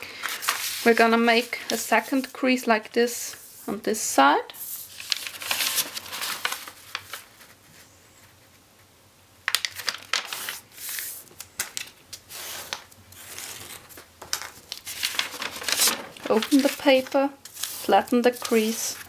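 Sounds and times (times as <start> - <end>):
paper rustling and crackling: 0.0 - 2.4, 4.6 - 8.5, 9.5 - 19.0
paper being folded and creased: 0.2 - 2.4, 4.6 - 8.4, 9.5 - 19.0.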